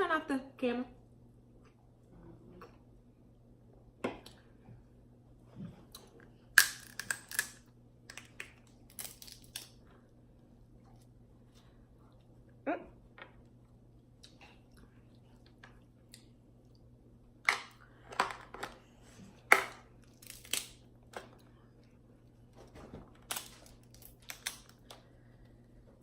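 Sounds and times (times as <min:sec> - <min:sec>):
faint low hum: 0:00.0 - 0:26.0
sharp cracks and crinkles: 0:06.0 - 0:09.9, 0:19.5 - 0:25.1.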